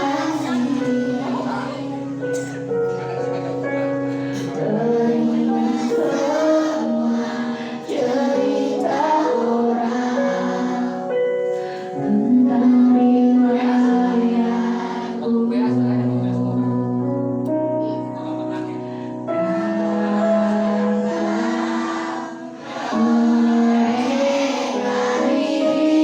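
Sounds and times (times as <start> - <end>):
children singing: 0.0 - 15.7, 19.4 - 26.0
electronic keyboard chords: 0.0 - 26.0.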